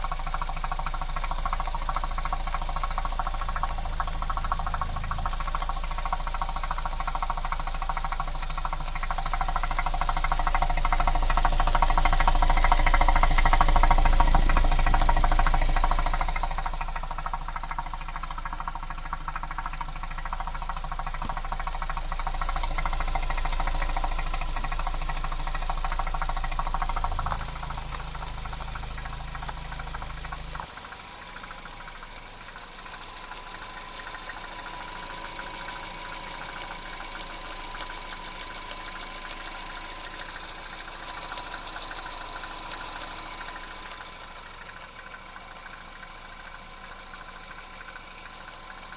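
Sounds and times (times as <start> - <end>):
deep low hum: 0.0 - 30.7
car engine running with ticking: 0.0 - 48.9.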